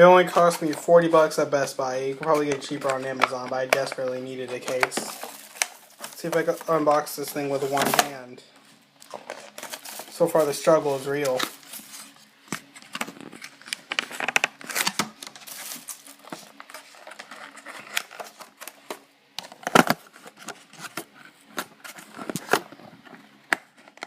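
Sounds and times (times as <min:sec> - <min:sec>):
packaging crinkling and tearing: 0:02.3 - 0:06.9, 0:09.0 - 0:24.0.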